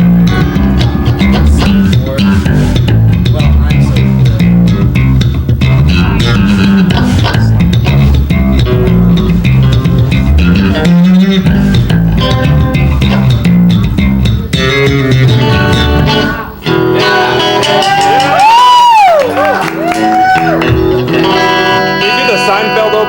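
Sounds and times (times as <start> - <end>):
bass guitar through amplifier: 0.0 - 23.0
electric guitar with pitch bends: 0.0 - 23.0.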